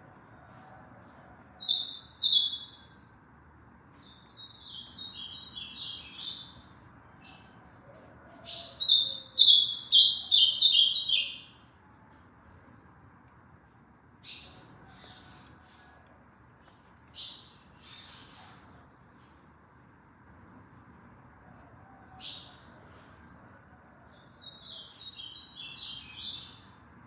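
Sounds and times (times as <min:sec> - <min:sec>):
bird singing warbled phrases: 0:01.6 - 0:03.0, 0:04.1 - 0:07.5, 0:08.4 - 0:11.6, 0:24.2 - 0:26.8.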